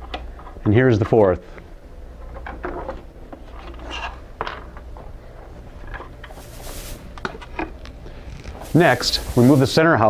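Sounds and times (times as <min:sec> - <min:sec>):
short hissing scrape: 0:06.3 - 0:07.3, 0:08.5 - 0:09.9
light clicks and scrapes: 0:06.3 - 0:09.8.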